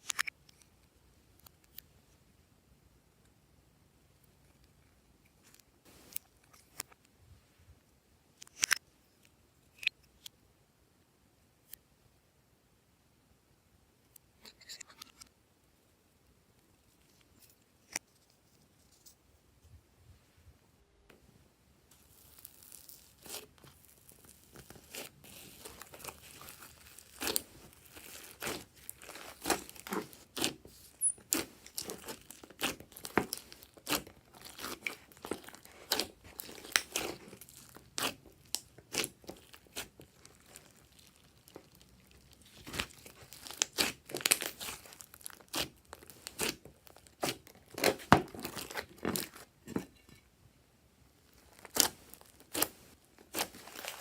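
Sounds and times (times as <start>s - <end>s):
slime squished by hand: 22.0s - 49.4s, 51.4s - 54.0s.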